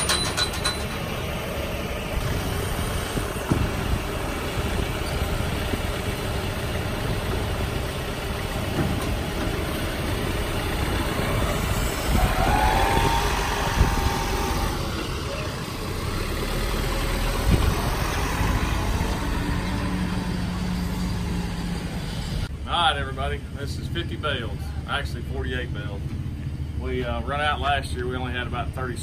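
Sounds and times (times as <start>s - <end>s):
engine idling: 0.0s - 29.0s
short rising whine: 9.8s - 22.5s.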